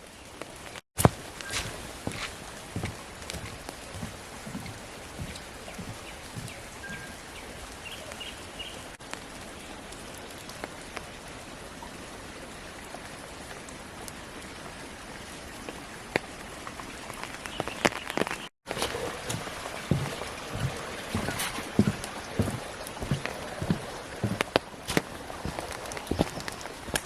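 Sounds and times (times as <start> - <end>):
footsteps on wet track: 1.0 - 8.8, 17.6 - 27.0
rain hissing: 1.0 - 11.4, 18.7 - 27.0
water dripping: 1.0 - 11.4, 15.6 - 27.0.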